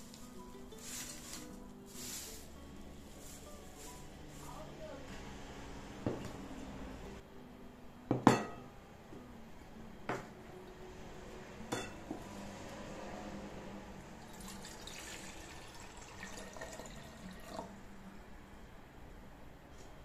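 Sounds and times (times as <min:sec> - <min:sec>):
tea pouring into a glass: 0:14.2 - 0:17.7.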